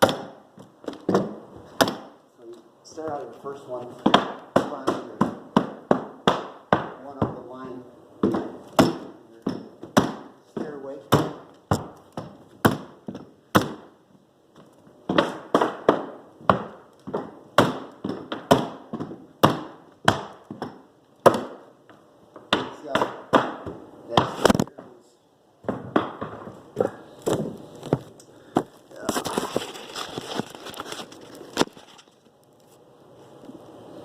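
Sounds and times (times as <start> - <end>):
mallet striking flooring nailer: 0.0 - 2.2, 4.0 - 7.4, 8.2 - 14.0, 15.1 - 21.7, 22.5 - 24.6.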